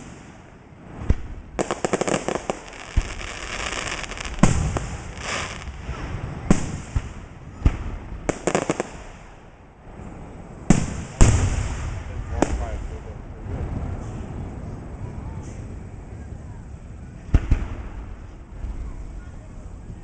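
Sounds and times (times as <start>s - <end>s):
firework bangs: 0.0s - 9.5s, 10.6s - 14.4s, 17.2s - 18.8s
firework crackling volleys: 0.0s - 16.1s.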